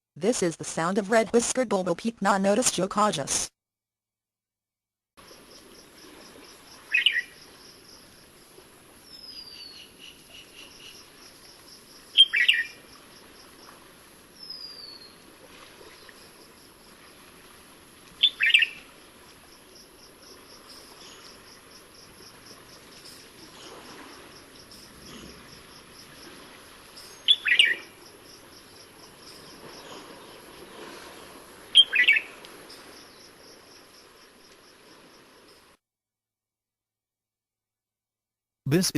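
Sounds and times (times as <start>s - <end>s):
insects trilling: 5.2s - 13.8s, 15.8s - 35.7s
bulbul calls: 6.9s - 7.4s, 12.2s - 12.8s, 18.2s - 18.8s, 27.3s - 27.9s, 31.8s - 32.3s.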